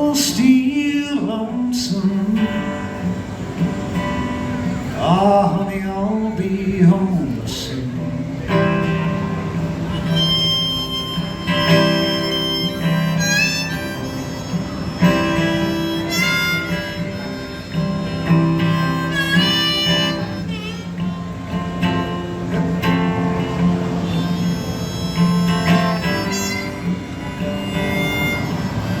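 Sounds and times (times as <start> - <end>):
guitar accompaniment: 0.0 - 29.0
lead melody with sliding notes: 9.2 - 29.0.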